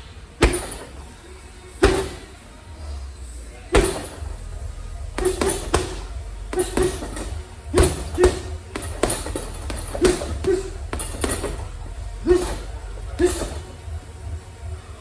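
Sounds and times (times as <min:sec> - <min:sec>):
punches on heavy punching bag: 0:00.4 - 0:01.2, 0:01.8 - 0:02.5, 0:03.7 - 0:13.8.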